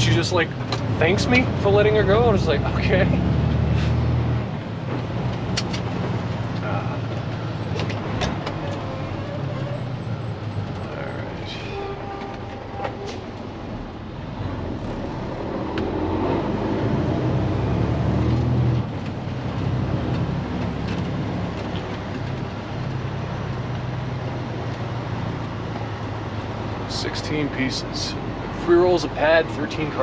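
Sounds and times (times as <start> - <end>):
truck diesel engine from inside cab: 0.0 - 20.4.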